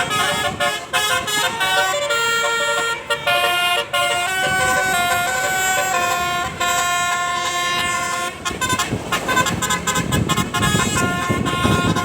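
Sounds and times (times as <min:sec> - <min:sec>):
multi-tone bus horn: 0:00.0 - 0:12.0.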